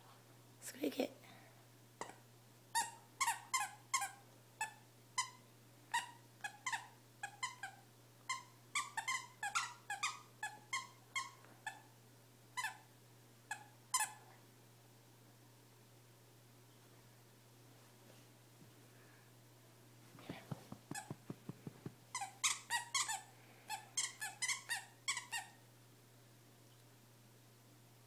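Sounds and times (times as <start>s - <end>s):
dog toy squeaking: 2.8s - 11.8s, 12.6s - 12.9s, 13.5s - 14.2s, 20.9s - 21.2s, 22.1s - 25.6s.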